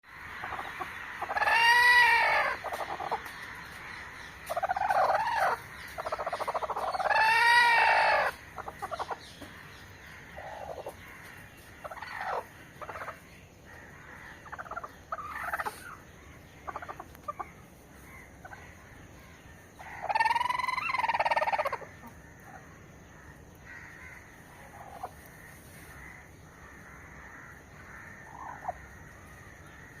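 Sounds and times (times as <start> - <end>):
chicken clucking: 0.4 - 9.5, 10.4 - 11.0, 11.6 - 13.2, 14.4 - 17.5, 20.0 - 22.5.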